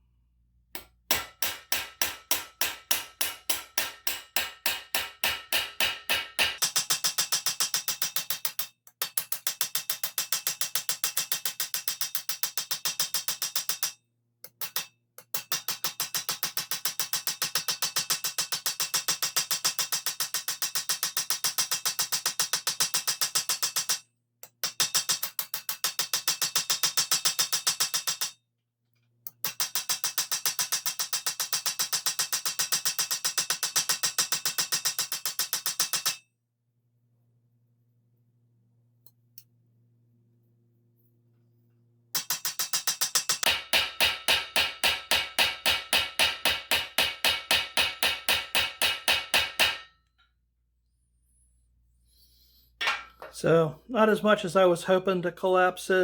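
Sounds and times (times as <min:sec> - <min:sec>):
hammer striking steel: 0:00.8 - 0:14.0, 0:42.2 - 0:50.0, 0:52.8 - 0:53.4.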